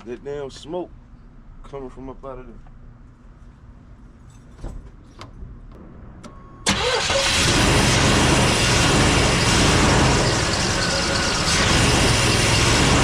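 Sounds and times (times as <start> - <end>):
truck engine starting and running: 5.8 - 13.0.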